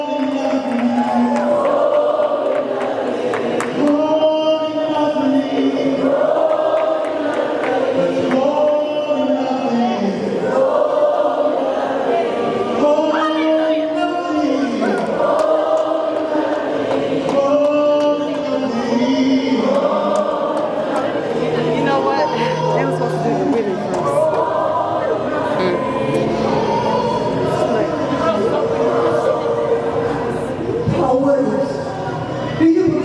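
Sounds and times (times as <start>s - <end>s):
group of voices singing: 0.0s - 33.0s.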